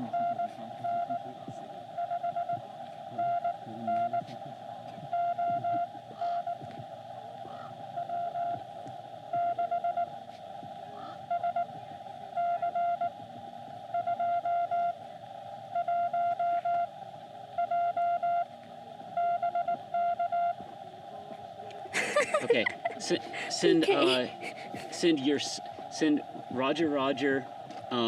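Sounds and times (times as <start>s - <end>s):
morse code tone: 0.0s - 4.4s, 5.0s - 6.7s, 7.9s - 8.6s, 9.3s - 10.2s, 11.2s - 13.2s, 13.9s - 15.0s, 15.7s - 16.9s, 17.6s - 18.5s, 19.1s - 20.6s
receiver hiss: 0.0s - 28.0s.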